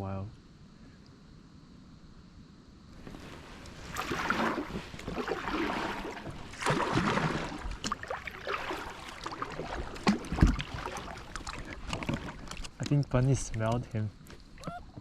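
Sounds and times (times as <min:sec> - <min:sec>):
paddle swishing in water: 0:03.0 - 0:15.0.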